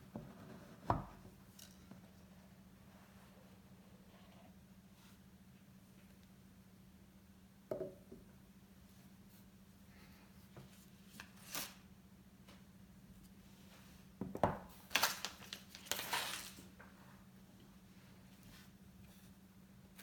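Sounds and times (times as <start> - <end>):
packaging crinkling and tearing: 14.8 - 16.7.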